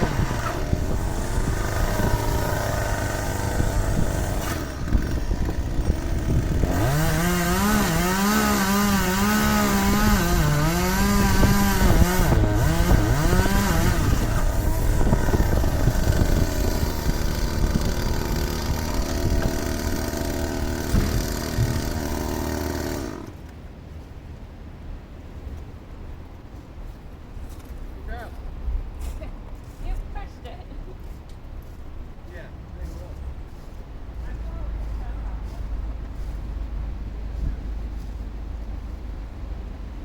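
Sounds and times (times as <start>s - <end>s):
chainsaw engine running: 0.0s - 23.4s.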